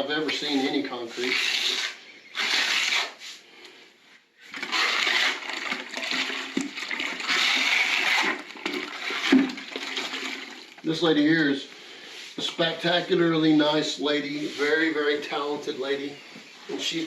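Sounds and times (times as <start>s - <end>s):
grout scraping across tile floor: 0.2s - 3.4s, 4.1s - 10.6s.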